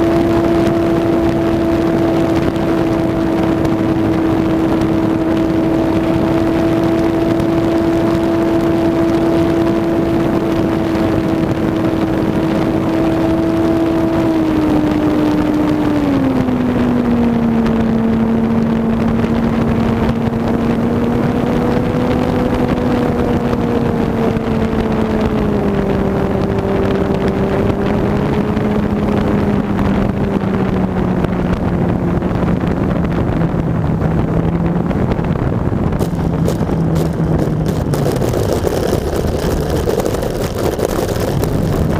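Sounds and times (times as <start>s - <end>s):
electric motor and propeller whining: 32.9s - 41.9s
wind rushing: 33.3s - 41.9s.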